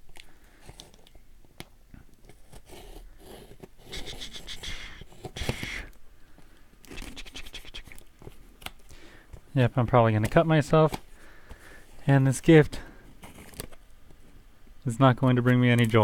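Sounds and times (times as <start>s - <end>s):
blade cutting tape and cardboard: 2.5s - 5.9s.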